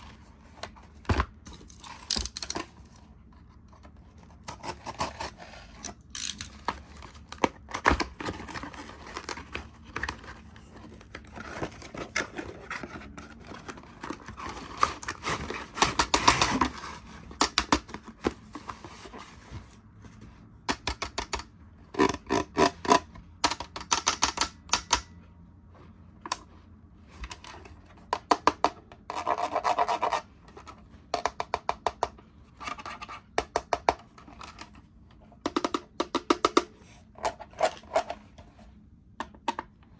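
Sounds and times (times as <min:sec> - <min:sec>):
plastic and cardboard scraping: 0:02.8 - 0:20.3.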